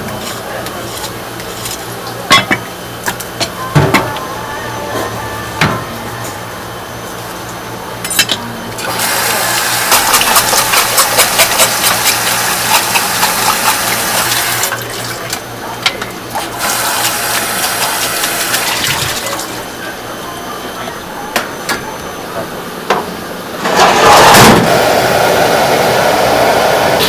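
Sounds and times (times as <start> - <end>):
tap water running: 8.8 - 15.4, 16.3 - 19.7.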